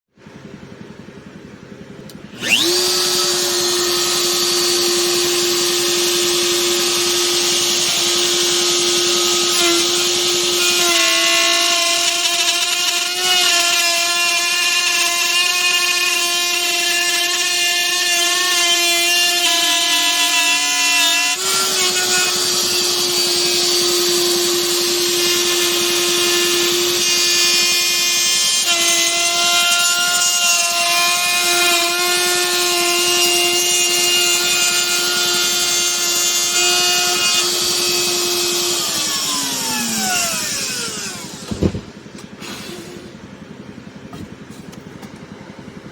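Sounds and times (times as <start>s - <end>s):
wood router whining: 1.9s - 45.9s
hiss of bit cutting wood: 33.3s - 43.2s.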